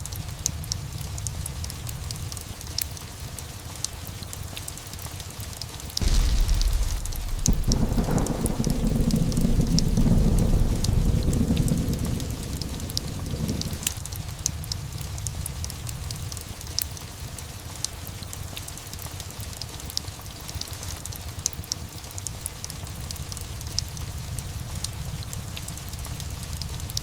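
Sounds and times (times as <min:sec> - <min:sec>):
steady rain: 0:00.0 - 0:27.0
fireplace crackling: 0:06.0 - 0:14.0
low thunder rumble: 0:06.0 - 0:16.2.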